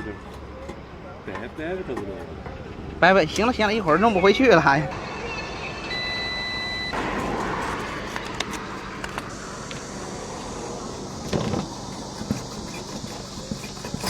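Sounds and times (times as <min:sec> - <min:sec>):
steady background hum: 0:00.0 - 0:14.0.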